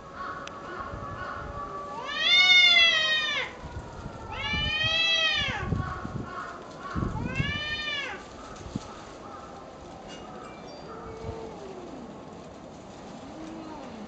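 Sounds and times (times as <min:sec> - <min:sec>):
cats yowling: 0:01.2 - 0:06.1, 0:07.1 - 0:08.4, 0:10.8 - 0:12.3, 0:13.2 - 0:14.0.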